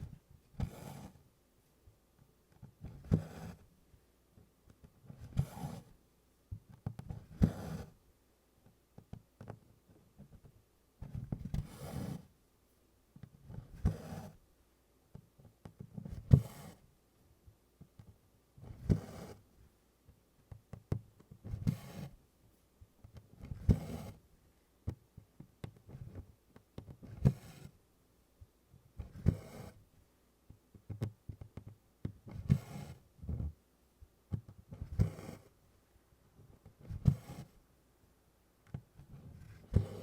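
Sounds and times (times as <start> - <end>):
thread rasping through fabric: 2.5 - 3.6, 36.5 - 37.6.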